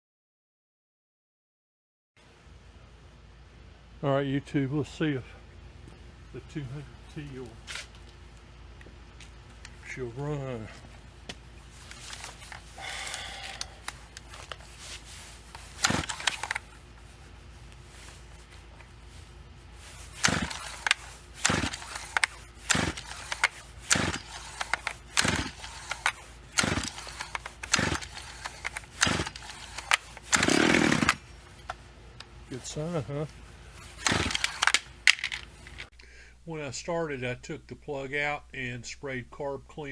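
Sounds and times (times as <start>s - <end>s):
chainsaw recoil starter pulls: 11.9s - 14.6s, 15.5s - 16.8s, 19.9s - 31.3s, 33.8s - 35.9s
chainsaw engine firing briefly: 15.8s - 16.6s, 20.2s - 26.0s, 26.6s - 29.6s, 30.3s - 31.2s, 34.0s - 34.8s.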